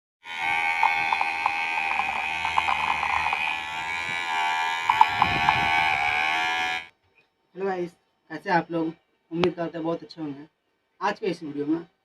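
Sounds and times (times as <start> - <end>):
electric motor whining: 0.2 - 6.9.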